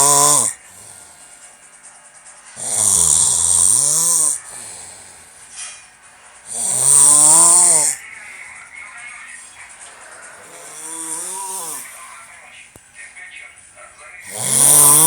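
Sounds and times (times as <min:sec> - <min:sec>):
cat snoring: 0:00.0 - 0:01.3, 0:02.6 - 0:05.5, 0:06.4 - 0:08.0, 0:10.4 - 0:12.1, 0:14.2 - 0:15.0.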